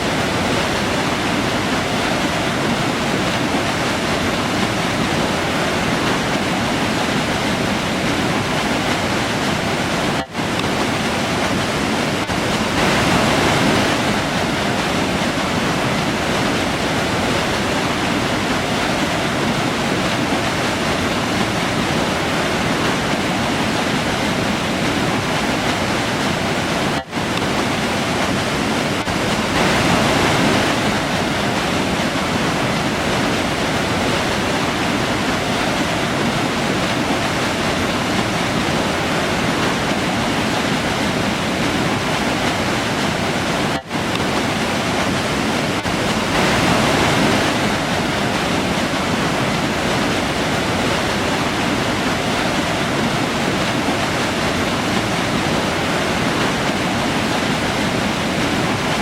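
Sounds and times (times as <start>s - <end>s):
river water rushing: 0.0s - 59.0s.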